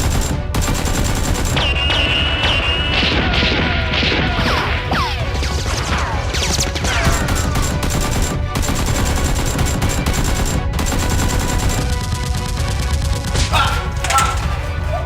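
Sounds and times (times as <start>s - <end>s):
rapid gunfire: 0.0s - 4.2s, 6.5s - 14.9s.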